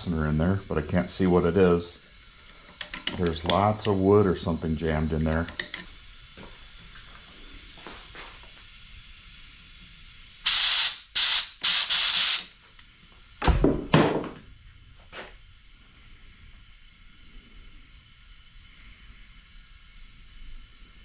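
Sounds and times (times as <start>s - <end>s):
pressurized spray hissing: 6.4s - 12.6s.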